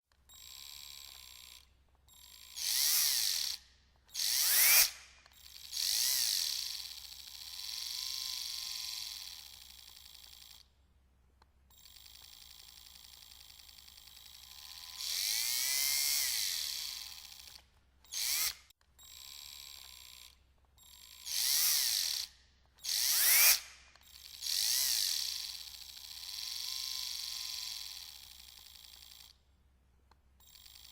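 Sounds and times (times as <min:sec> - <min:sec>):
power drill whining: 0:00.3 - 0:10.6, 0:11.7 - 0:29.4.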